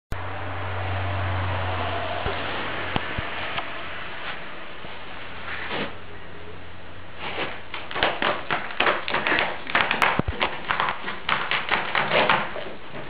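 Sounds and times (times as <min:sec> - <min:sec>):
rapid short taps or scratches: 0:07.2 - 0:13.0.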